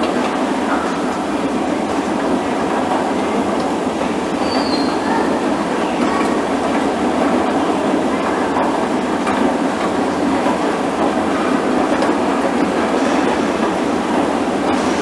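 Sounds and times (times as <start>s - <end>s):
escalator rumble and clatter: 5.2s - 15.0s.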